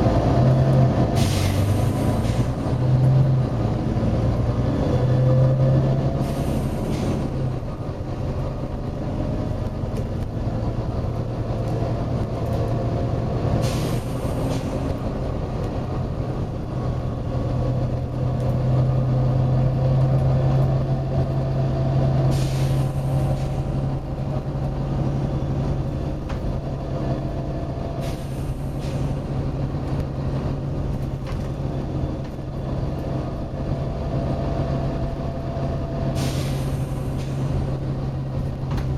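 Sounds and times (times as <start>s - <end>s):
bus diesel engine running: 0.0s - 38.9s
air brake hisses: 1.2s - 2.6s, 6.2s - 7.4s, 13.6s - 14.9s, 22.2s - 23.8s, 28.0s - 29.3s, 36.1s - 37.7s.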